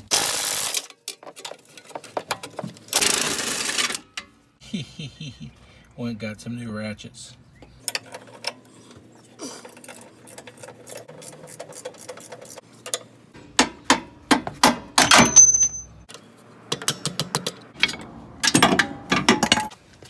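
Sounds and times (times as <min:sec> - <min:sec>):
metal tools clanking: 0:09.6 - 0:16.1, 0:17.8 - 0:19.8.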